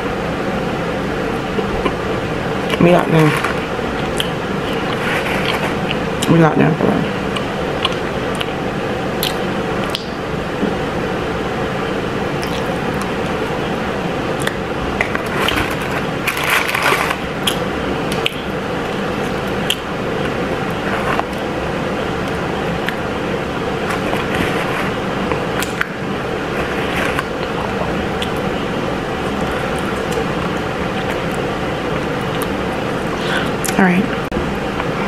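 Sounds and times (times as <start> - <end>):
steady background hum: 0.0 - 35.0
person chewing crunchy food: 2.6 - 6.3, 7.2 - 10.0, 12.4 - 13.6, 14.3 - 21.5.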